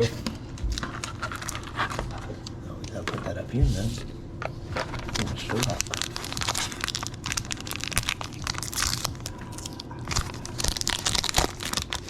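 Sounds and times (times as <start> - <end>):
foil wrappers tearing and crinkling: 0.7 - 2.2, 4.8 - 12.0.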